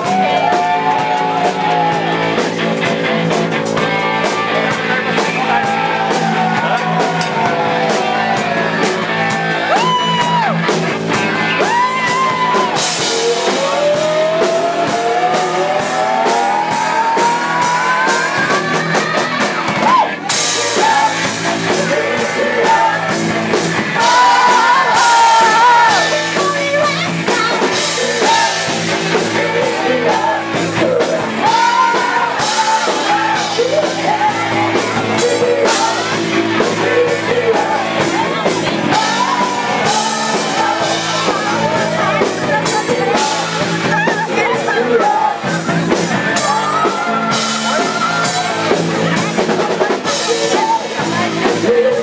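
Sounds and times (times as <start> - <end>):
bass guitar: 0.0 - 52.0
drums: 0.0 - 52.0
electric guitar: 0.0 - 52.0
person singing: 11.1 - 52.0.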